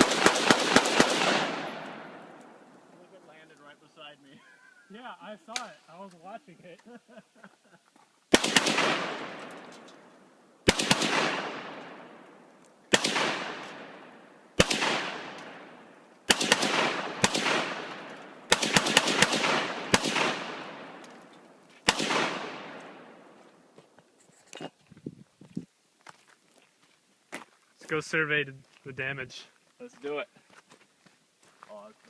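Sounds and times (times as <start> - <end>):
rifle shots with echo: 0.0 - 2.7, 8.3 - 23.4.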